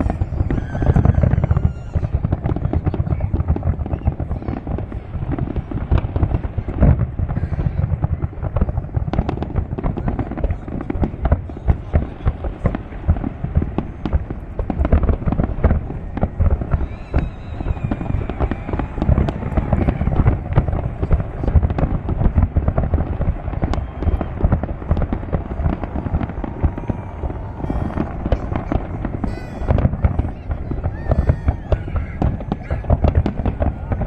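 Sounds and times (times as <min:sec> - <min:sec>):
fireworks bangs and crackles: 0:00.0 - 0:34.0.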